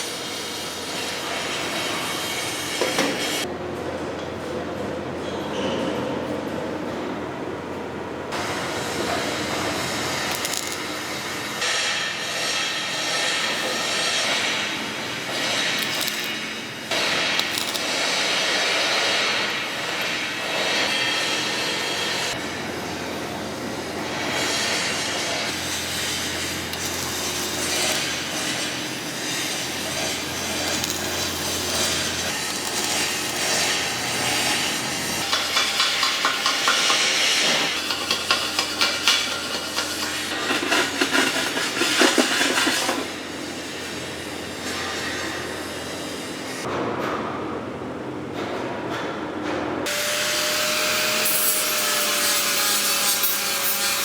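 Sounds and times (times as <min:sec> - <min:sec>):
welding arc crackling and hissing: 0:08.4 - 0:46.7.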